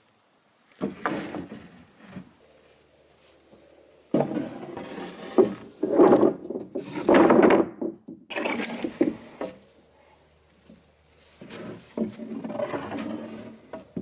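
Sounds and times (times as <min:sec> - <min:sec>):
boards scraping: 0:00.7 - 0:09.7, 0:10.7 - 0:14.0
wooden boards knocking: 0:04.1 - 0:09.6.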